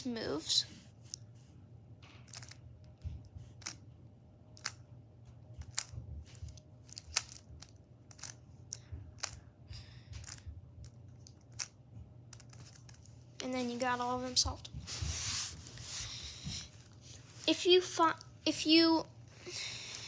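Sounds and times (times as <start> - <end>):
puzzle cube clicking: 2.3 - 2.6, 3.6 - 3.8, 4.6 - 4.8, 5.6 - 9.4, 12.3 - 13.0.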